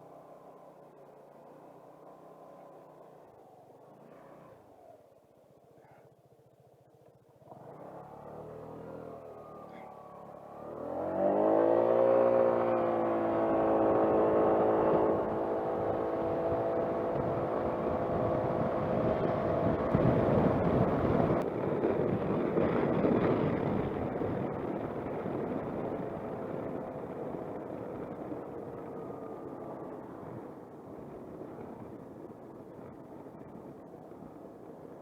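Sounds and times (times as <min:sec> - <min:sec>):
scooter engine pulling away: 0:07.2 - 0:35.0
wind noise: 0:10.5 - 0:35.0.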